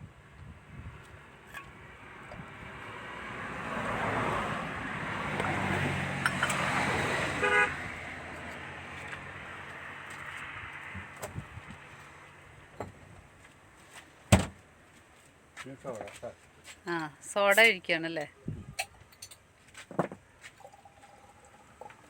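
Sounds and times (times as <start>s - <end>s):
vehicle passing on road: 0.7s - 14.8s.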